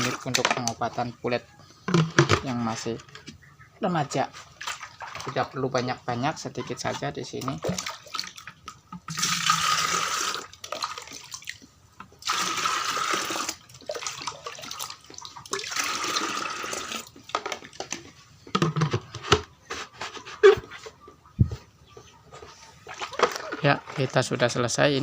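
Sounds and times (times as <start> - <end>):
liquid pouring: 9.1 - 17.2.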